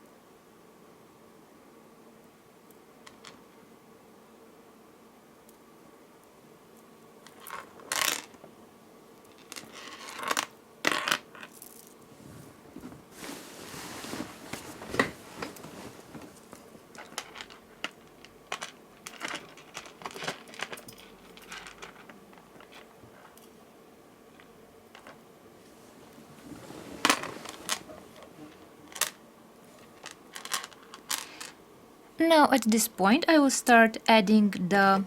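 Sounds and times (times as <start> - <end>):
beads clicking and clinking: 7.3 - 8.4, 16.9 - 22.8, 29.8 - 31.6.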